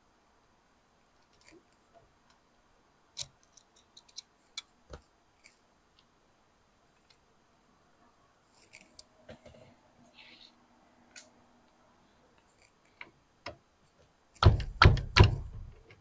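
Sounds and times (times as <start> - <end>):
small parts clicking and tapping: 1.2 - 2.4, 3.2 - 6.1
dull knock: 14.4 - 15.8.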